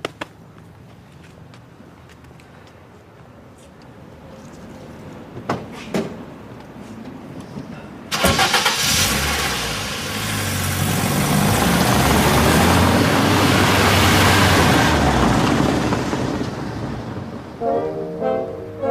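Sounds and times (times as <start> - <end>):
vehicle engine pulling away: 8.1 - 17.6.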